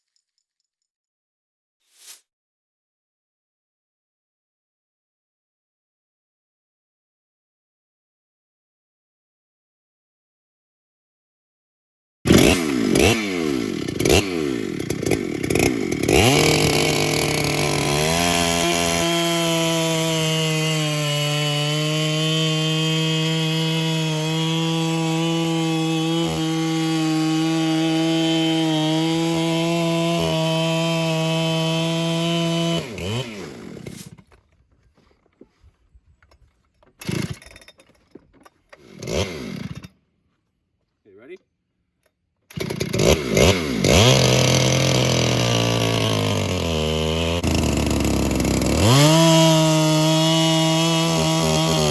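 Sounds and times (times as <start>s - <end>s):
electric chainsaw cutting log: 12.3s - 34.3s, 37.0s - 37.5s, 38.8s - 40.0s, 42.5s - 51.9s.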